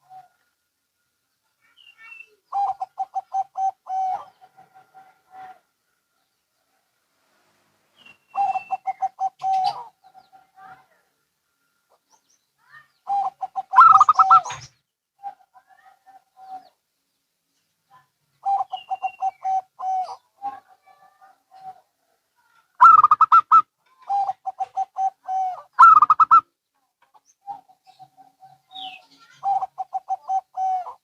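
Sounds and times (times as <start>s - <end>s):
doves cooing: 0.0s - 0.4s, 2.5s - 5.7s, 8.0s - 10.8s, 13.0s - 16.7s, 18.4s - 31.0s.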